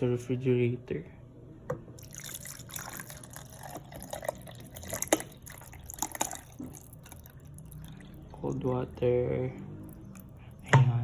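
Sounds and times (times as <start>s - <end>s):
water pouring splashing: 2.0s - 8.9s.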